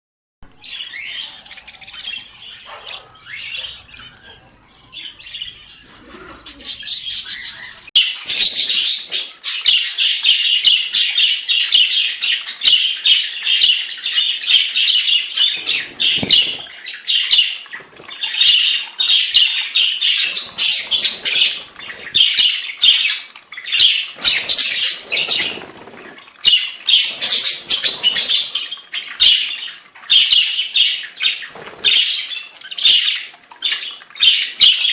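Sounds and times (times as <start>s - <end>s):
budgerigars chattering: 0.5s - 7.9s
wings flapping: 0.5s - 7.9s.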